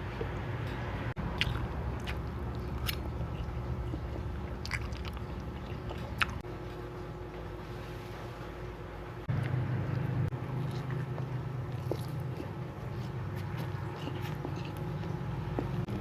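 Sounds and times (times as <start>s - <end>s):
steady low hum: 0.0s - 16.0s
biting and chewing clicks: 1.3s - 6.4s.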